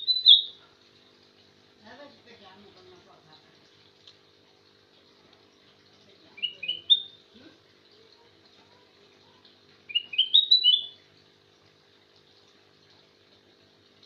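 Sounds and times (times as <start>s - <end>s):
bird singing whistled notes: 0.0s - 0.5s, 6.4s - 7.2s, 9.9s - 11.0s
faint steady hum: 0.0s - 14.0s.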